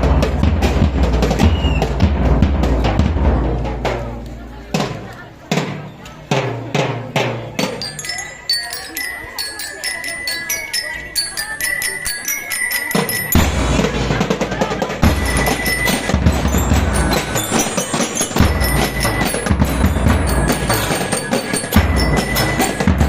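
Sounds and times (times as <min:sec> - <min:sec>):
snare drumming: 0:00.0 - 0:04.2, 0:11.9 - 0:23.0
bass drums and percussion: 0:00.0 - 0:23.0
bell lyres playing melody: 0:07.6 - 0:14.3, 0:15.0 - 0:23.0.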